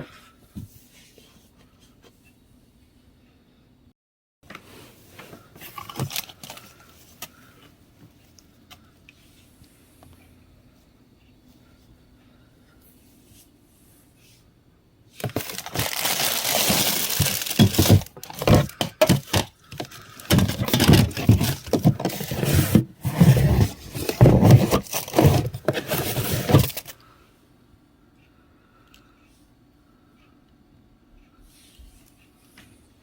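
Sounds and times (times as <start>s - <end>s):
rummaging with crinkling and knocks: 4.5s - 8.2s, 15.2s - 27.0s.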